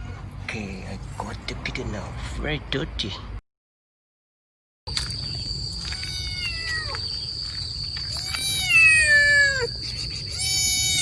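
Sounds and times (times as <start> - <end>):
high insect drone: 4.9 - 11.0
kitten meowing: 5.8 - 7.2, 8.1 - 9.7.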